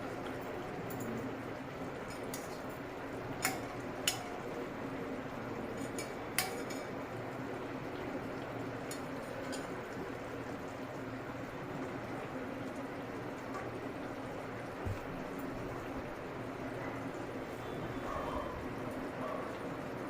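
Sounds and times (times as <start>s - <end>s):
metal utensil clinking on pot: 5.8s - 6.9s.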